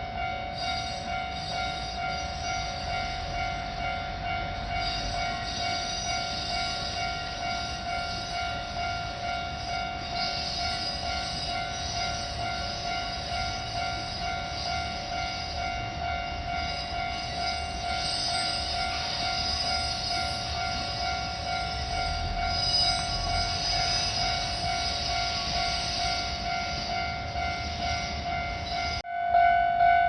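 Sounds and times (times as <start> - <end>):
level crossing warning bell: 0.0 - 30.0
low railway rumble: 0.0 - 30.0.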